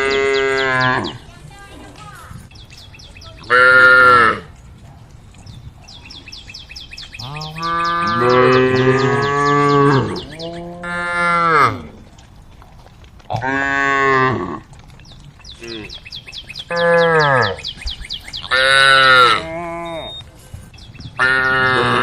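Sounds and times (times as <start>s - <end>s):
cows mooing: 0.0s - 1.2s, 3.4s - 4.6s, 7.1s - 12.2s, 13.3s - 14.8s, 16.6s - 17.7s, 18.4s - 20.2s, 21.2s - 22.0s.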